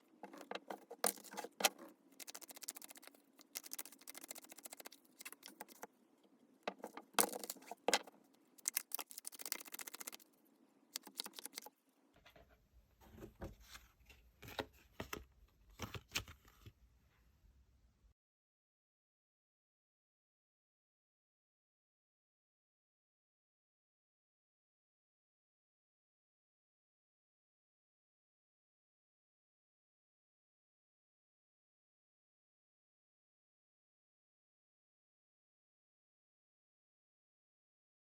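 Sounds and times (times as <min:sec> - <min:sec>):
cards being shuffled: 0:00.3 - 0:05.9, 0:06.7 - 0:10.2, 0:11.0 - 0:11.7.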